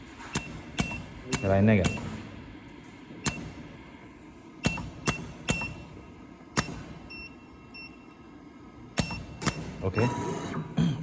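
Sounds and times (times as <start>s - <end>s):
sharp mechanical clacks: 9.0s - 9.9s.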